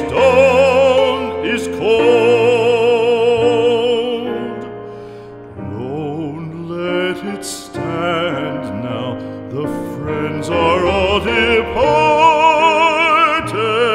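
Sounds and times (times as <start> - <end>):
trained voice singing with vibrato: 0.0 - 4.6, 9.6 - 13.9.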